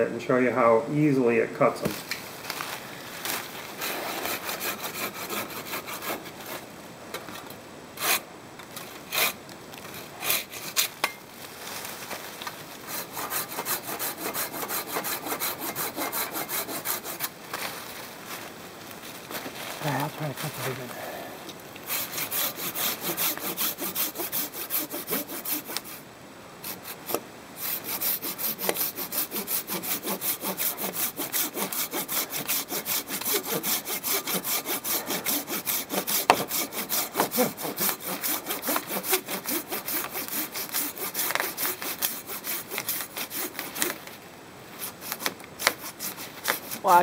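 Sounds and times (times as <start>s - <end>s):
handsaw cutting tree trunk: 3.8s - 6.7s, 8.0s - 8.3s, 9.1s - 11.0s, 12.8s - 17.4s, 21.8s - 26.0s, 26.6s - 44.1s, 44.8s - 47.0s.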